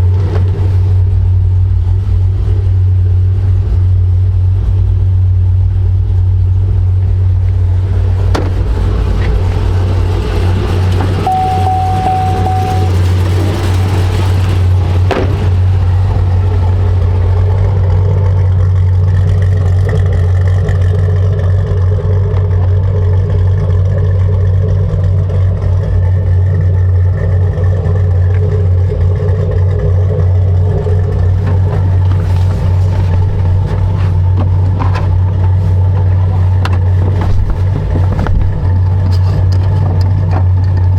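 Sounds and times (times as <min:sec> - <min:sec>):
car engine running steadily: 0:00.0 - 0:40.9
short steady beep: 0:11.3 - 0:13.0.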